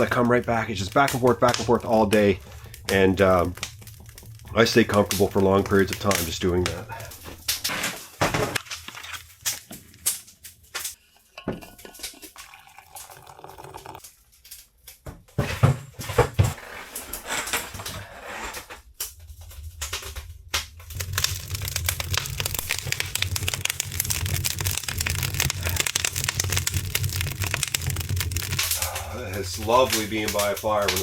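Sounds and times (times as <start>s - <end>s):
low rumble of stove draft: 0.0s - 7.6s, 20.8s - 31.0s
wood fire crackling: 0.0s - 11.0s, 11.9s - 15.0s, 19.0s - 31.0s.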